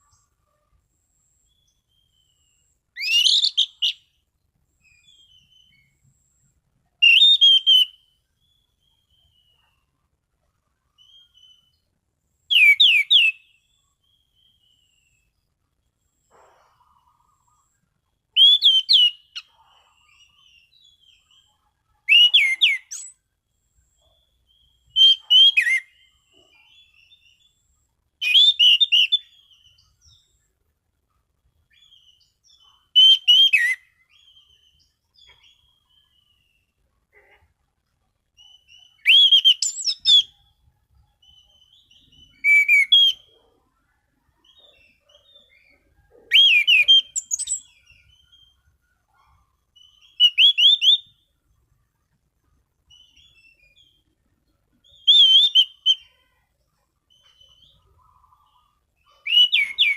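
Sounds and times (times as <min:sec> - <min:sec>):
soft bird twittering: 0:00.0 - 0:10.0, 0:10.8 - 0:30.6, 0:31.5 - 0:37.5, 0:38.2 - 0:59.9
thrush whistled song: 0:01.4 - 0:04.1, 0:07.0 - 0:09.8, 0:12.5 - 0:15.4, 0:18.3 - 0:19.6, 0:22.1 - 0:23.2, 0:24.0 - 0:27.6, 0:28.2 - 0:30.4, 0:31.7 - 0:36.7, 0:38.4 - 0:43.6, 0:44.4 - 0:51.4, 0:54.8 - 0:56.4, 0:59.0 - 0:59.9.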